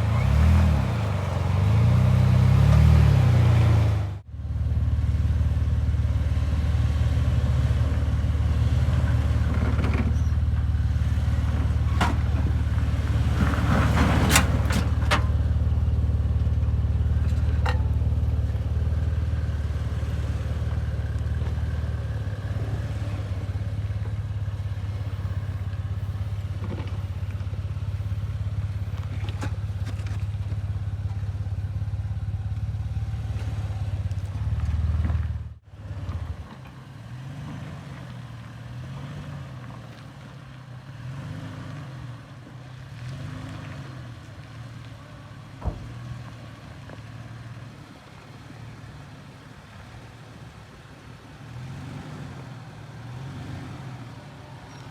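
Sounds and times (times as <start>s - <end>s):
engine revving: 0.0s - 4.3s
engine running at low revs: 0.0s - 54.9s.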